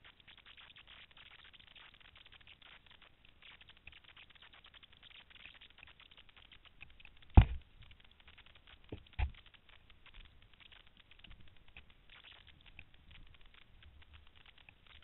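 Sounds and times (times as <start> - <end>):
faint crackling and clicking: 0.0 - 15.0
sharp knocks: 7.4 - 7.6.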